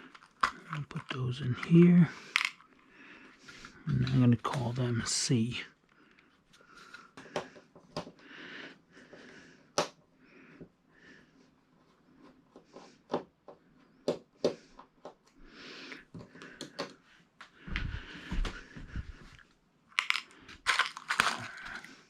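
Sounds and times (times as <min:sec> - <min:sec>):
small parts clicking: 0:00.0 - 0:02.7, 0:20.0 - 0:21.9.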